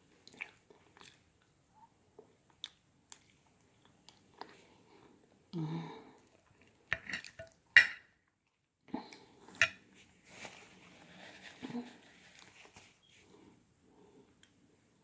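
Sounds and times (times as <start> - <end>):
soft handling noises: 9.5 - 13.6.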